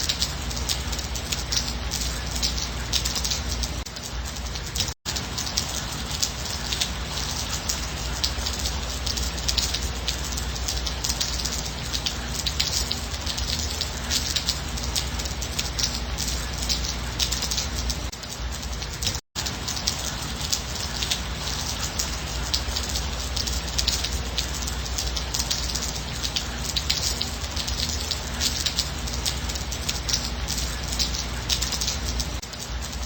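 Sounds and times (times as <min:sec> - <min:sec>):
light rain pattering: 0:00.0 - 0:33.0.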